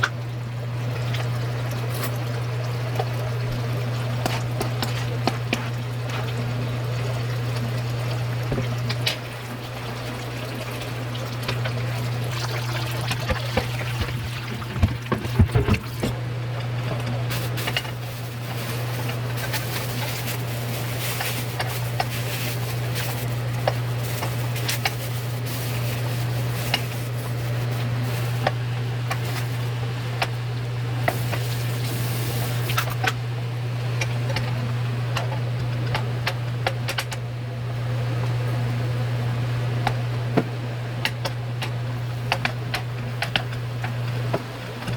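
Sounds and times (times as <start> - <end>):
liquid trickling in a pot: 0.0 - 30.0
steady low hum: 0.0 - 44.9.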